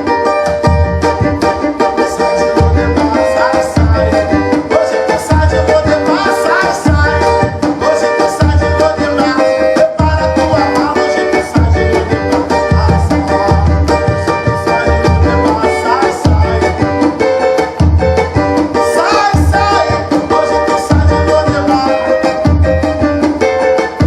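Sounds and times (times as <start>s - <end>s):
drum beating steady pulse: 0.0s - 24.0s
small guitar strumming: 0.0s - 24.0s.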